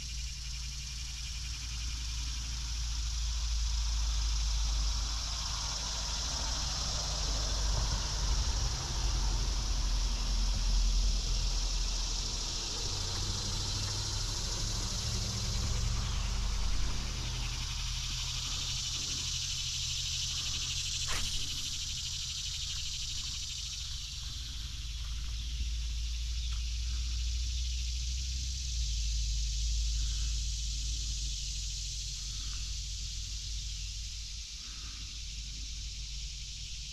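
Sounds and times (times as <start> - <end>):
steady high hiss: 9.5 - 36.9
low rumble: 10.6 - 27.5.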